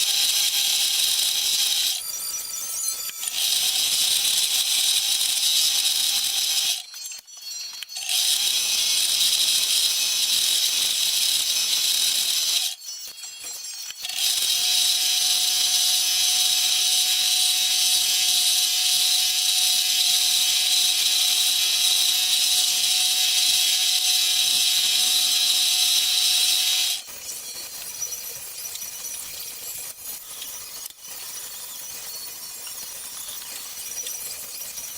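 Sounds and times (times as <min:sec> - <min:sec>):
small electric power tool running: 0:00.0 - 0:28.2.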